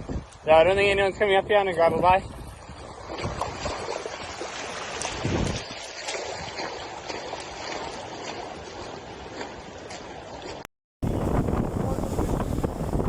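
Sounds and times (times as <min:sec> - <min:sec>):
wind buffeting microphone: 0:00.0 - 0:06.7, 0:11.0 - 0:13.0.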